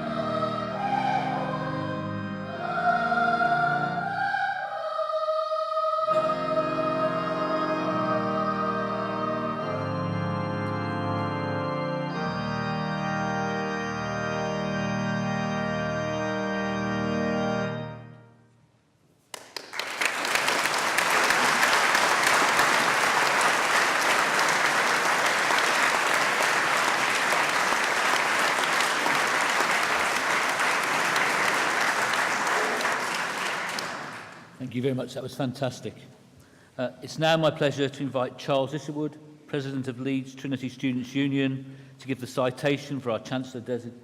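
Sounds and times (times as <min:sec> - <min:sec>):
audience applause: 0:19.4 - 0:34.5.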